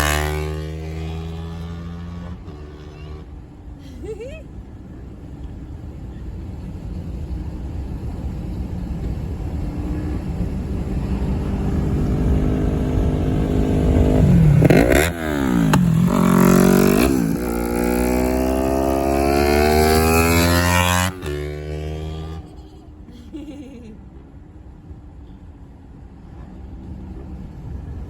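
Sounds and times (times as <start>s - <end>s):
motorcycle engine revving: 0.0s - 3.4s, 9.7s - 22.7s.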